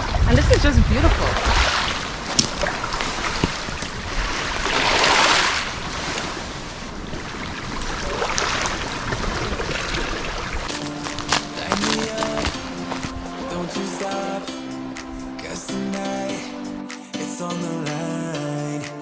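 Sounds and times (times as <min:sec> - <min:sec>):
wind on microphone: 0:00.0 - 0:13.6
ocean surf washing ashore: 0:00.0 - 0:18.0.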